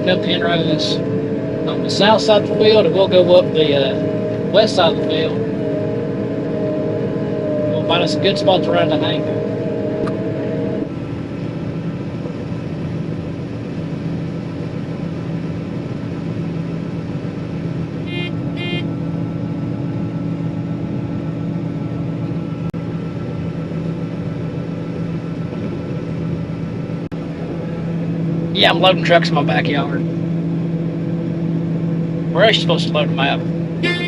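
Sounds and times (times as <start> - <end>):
combine harvester engine drone: 0.0 - 34.0
short beeps: 18.1 - 18.9.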